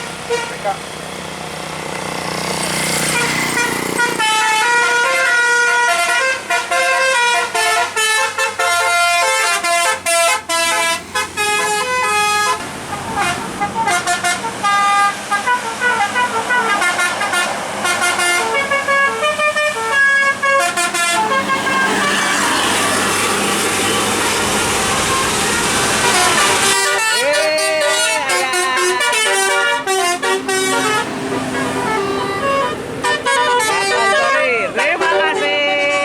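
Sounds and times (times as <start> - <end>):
musical air horns: 2.9 - 36.0
loud rushing noise: 15.6 - 27.0.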